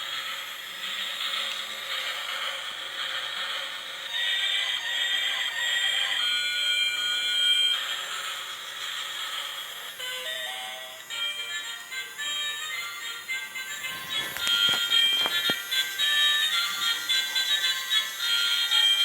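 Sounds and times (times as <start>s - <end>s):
steady high hiss: 0.0s - 19.0s
shrill electronic alarm tones: 10.0s - 19.0s.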